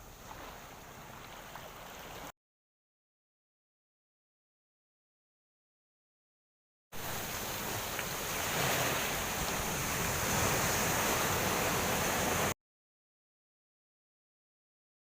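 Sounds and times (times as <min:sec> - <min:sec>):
wind: 0:00.0 - 0:02.3, 0:07.0 - 0:12.6
breaking surf: 0:07.0 - 0:12.6.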